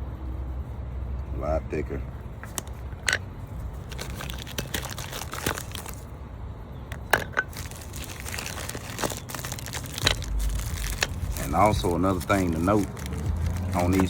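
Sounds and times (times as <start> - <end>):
brake pads clicking and rustling: 2.2 - 6.2, 6.8 - 14.0.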